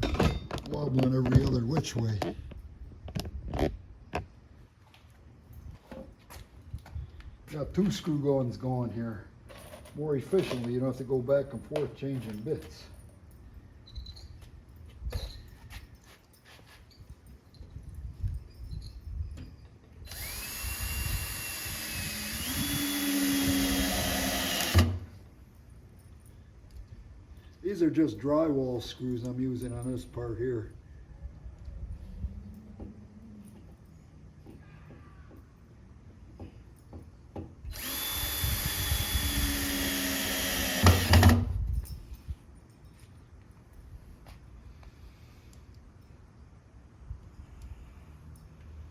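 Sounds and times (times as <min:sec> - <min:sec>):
cordless screw gun whining: 0:20.1 - 0:25.1, 0:37.7 - 0:41.6.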